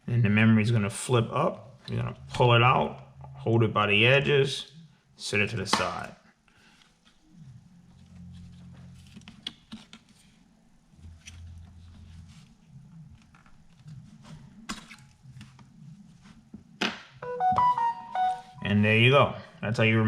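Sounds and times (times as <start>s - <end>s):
low hum: 0.5s - 5.7s, 7.1s - 9.4s.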